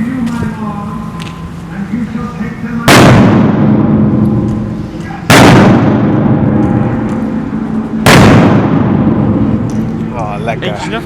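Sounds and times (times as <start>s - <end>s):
firecracker bangs echoing: 2.8s - 7.1s, 8.0s - 9.7s.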